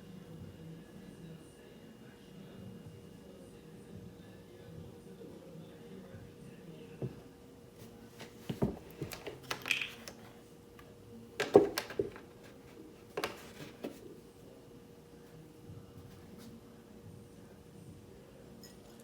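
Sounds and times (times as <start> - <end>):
kitchen items clattering on counter: 8.5 - 10.2, 11.4 - 12.2.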